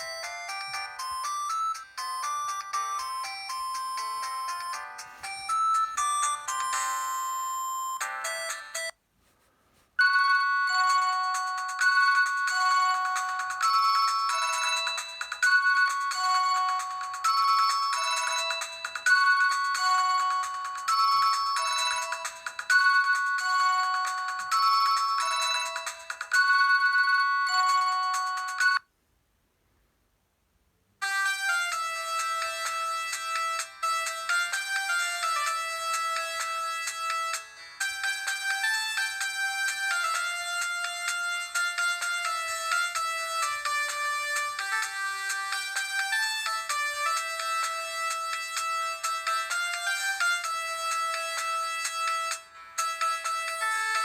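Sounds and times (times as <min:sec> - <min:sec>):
melodic ringtone with high notes: 0:00.0 - 0:09.0, 0:10.0 - 0:28.8, 0:31.0 - 0:54.0
mobile phone ringtones: 0:00.0 - 0:09.0, 0:10.0 - 0:28.9.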